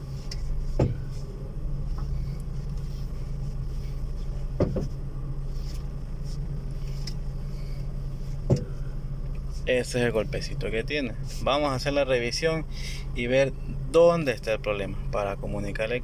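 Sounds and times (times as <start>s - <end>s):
car running hum: 0.0s - 16.0s
car suspension knocking: 0.7s - 1.1s, 4.5s - 5.0s, 8.4s - 8.8s.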